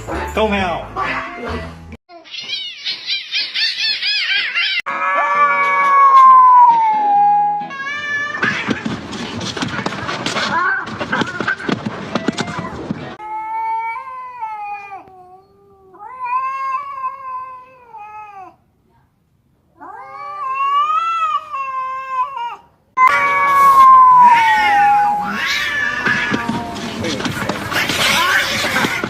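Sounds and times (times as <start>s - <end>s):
cats yowling: 2.1s - 9.0s, 13.2s - 18.6s, 19.8s - 29.0s
cat hissing: 23.0s - 29.0s.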